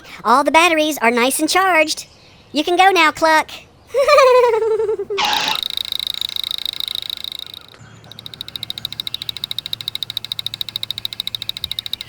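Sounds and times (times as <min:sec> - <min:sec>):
rapid buzzing pulse: 0:05.2 - 0:12.0.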